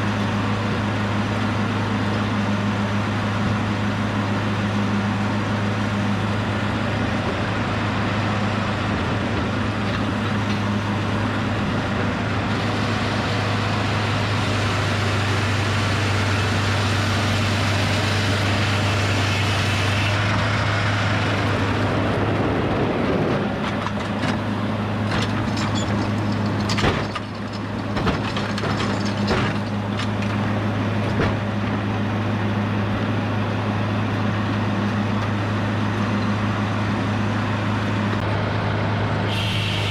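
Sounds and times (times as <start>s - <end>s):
hydraulic power unit humming: 0.0s - 39.9s
saw cutting through log: 12.6s - 20.3s
sharp knocks and clunks: 25.1s - 30.4s, 31.0s - 31.4s.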